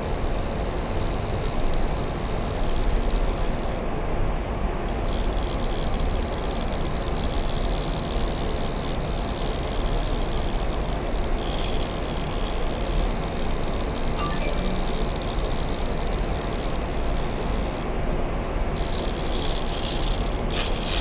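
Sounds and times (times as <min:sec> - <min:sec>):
faint rising chirp: 0:14.2 - 0:15.4.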